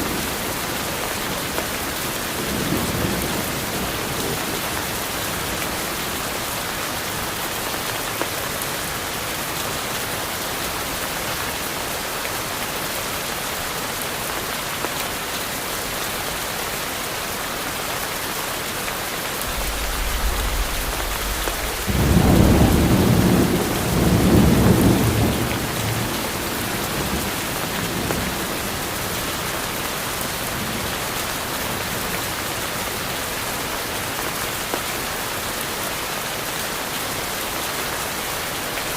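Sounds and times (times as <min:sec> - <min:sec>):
steady rain: 0:00.0 - 0:38.9
thunder rumbling: 0:19.4 - 0:27.2.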